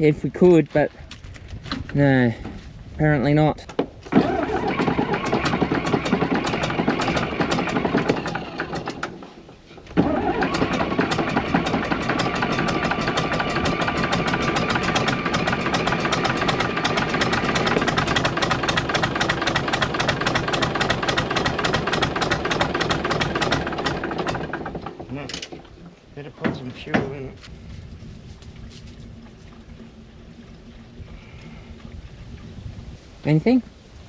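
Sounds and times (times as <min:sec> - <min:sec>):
diesel engine running: 0:04.1 - 0:25.3.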